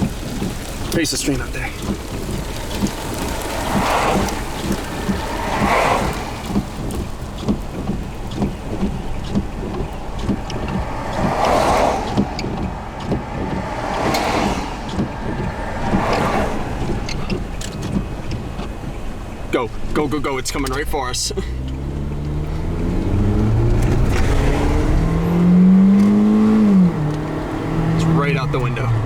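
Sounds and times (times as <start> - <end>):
strong wind buffeting microphone: 0.0 - 20.2
rain or debris ticking: 0.0 - 29.0.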